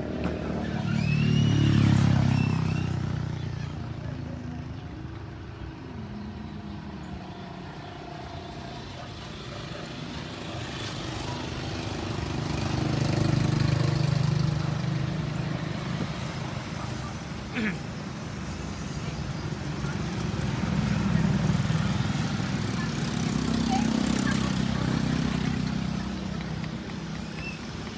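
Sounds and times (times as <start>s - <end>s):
traffic noise: 0.0s - 27.9s
vehicle engine running: 8.2s - 27.9s.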